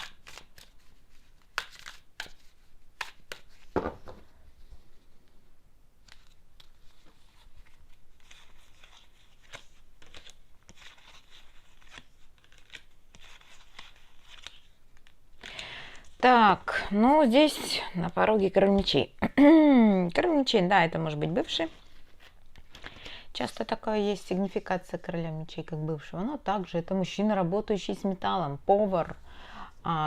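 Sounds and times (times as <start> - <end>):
cards shuffling rustle: 0.0 - 5.4, 6.0 - 16.2, 21.8 - 23.2
cards snapping: 1.5 - 2.4.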